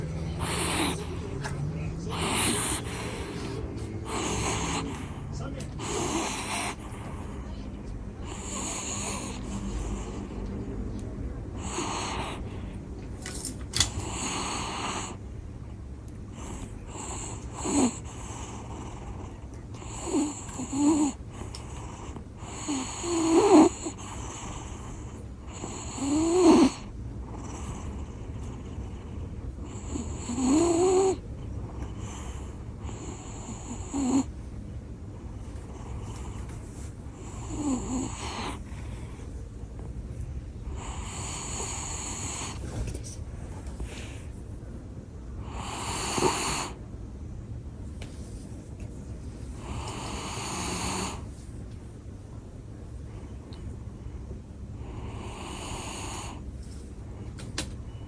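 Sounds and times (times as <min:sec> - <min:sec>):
dog snoring loudly: 0:00.0 - 0:07.4, 0:08.2 - 0:10.4, 0:11.6 - 0:12.6, 0:13.8 - 0:15.2, 0:16.3 - 0:34.3, 0:35.7 - 0:38.9, 0:40.6 - 0:42.8, 0:45.4 - 0:46.8, 0:49.6 - 0:51.4, 0:54.8 - 0:56.4.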